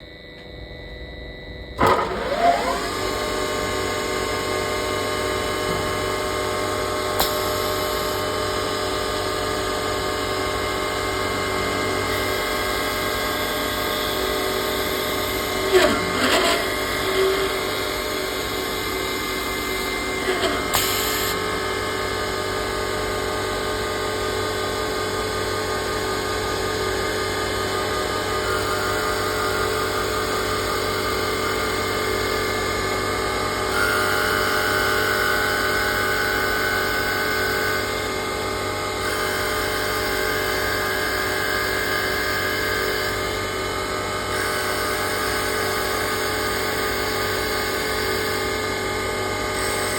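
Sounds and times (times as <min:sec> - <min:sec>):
high-pitched machine whine: 0:00.0 - 0:49.9
woodworking lathe running: 0:01.8 - 0:04.0, 0:10.5 - 0:23.9.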